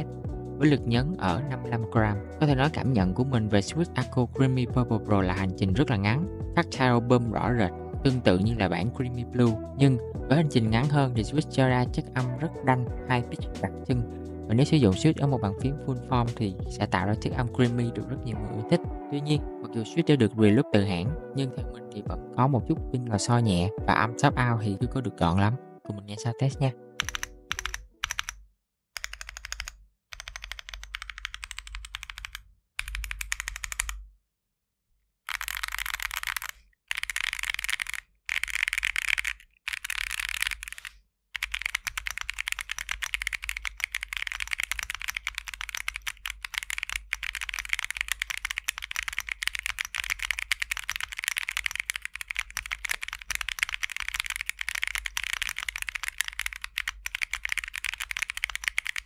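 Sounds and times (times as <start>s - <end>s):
mechanical keyboard typing: 27.0s - 28.4s, 29.0s - 34.0s, 35.3s - 59.0s.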